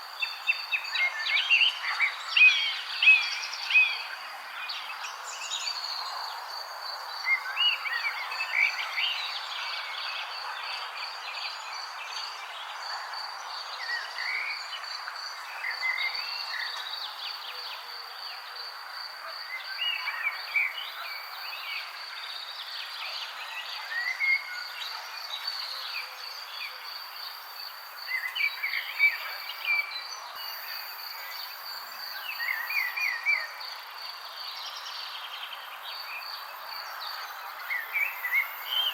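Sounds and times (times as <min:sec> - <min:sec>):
steady background hiss: 0:00.0 - 0:38.9
songbirds chirping and whistling: 0:19.5 - 0:38.9.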